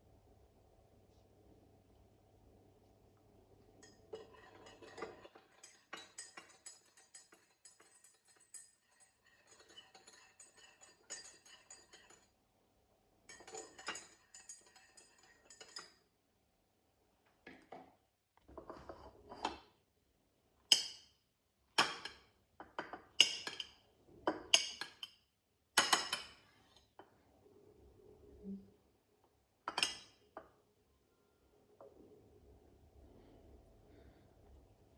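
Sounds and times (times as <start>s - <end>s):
dishes and cutlery clinking: 3.8s - 12.3s, 13.3s - 16.0s, 21.8s - 25.2s, 25.8s - 26.9s, 29.7s - 30.5s.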